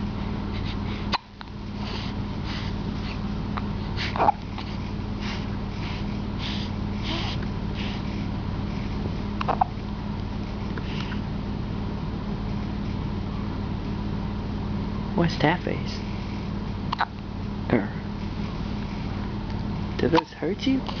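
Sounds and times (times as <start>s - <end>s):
steady low hum: 0.0s - 21.0s
baby hiccuping: 4.2s - 4.4s, 9.4s - 9.8s, 16.9s - 17.2s.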